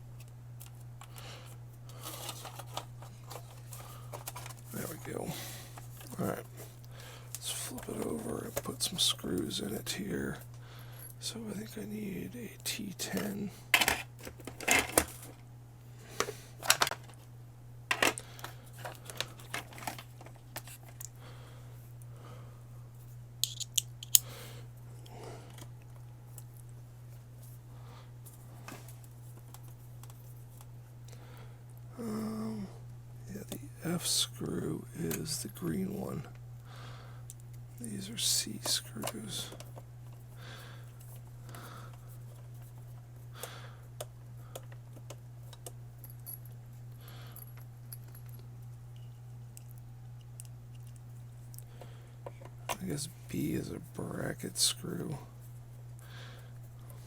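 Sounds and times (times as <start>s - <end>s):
steady low hum: 0.0s - 57.0s
small metal parts clicking and jingling: 23.4s - 24.2s, 47.3s - 48.4s
sharp clicks of tools and screws: 23.4s - 24.3s.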